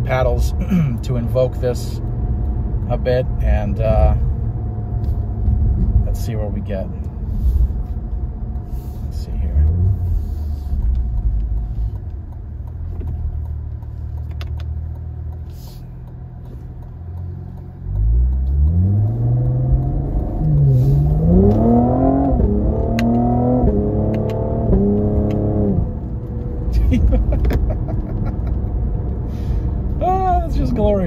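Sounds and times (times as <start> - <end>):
car engine accelerating: 0.1 - 31.0
exhaust burble: 18.5 - 26.0.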